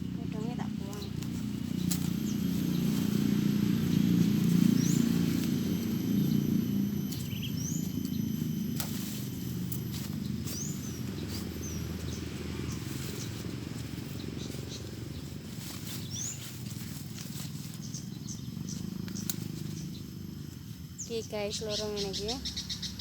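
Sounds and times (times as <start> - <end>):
steady low rumble: 0.0 - 23.0
bird chirps: 0.3 - 23.0.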